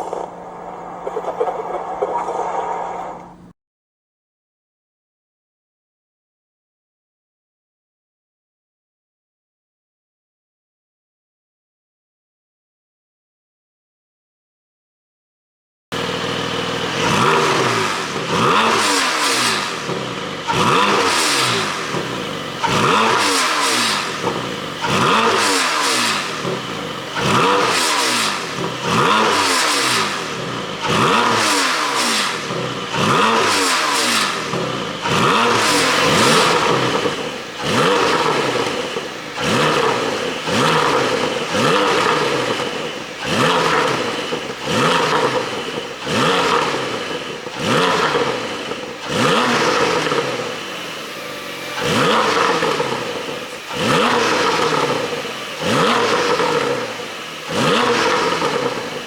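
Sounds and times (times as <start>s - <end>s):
car engine revving: 0.0s - 3.5s, 16.0s - 59.0s
exhaust popping and crackling: 0.0s - 3.5s, 16.0s - 59.0s.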